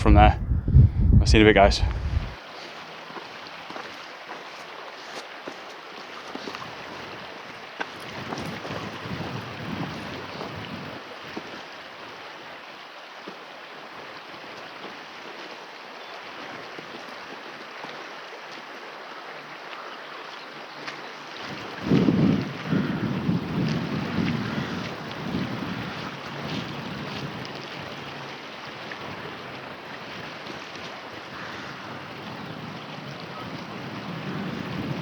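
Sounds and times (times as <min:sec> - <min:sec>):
strong wind rushing: 0:00.0 - 0:02.4, 0:21.8 - 0:26.0, 0:32.5 - 0:35.0
wind buffeting microphone: 0:00.0 - 0:02.4, 0:06.4 - 0:11.5, 0:21.4 - 0:35.0.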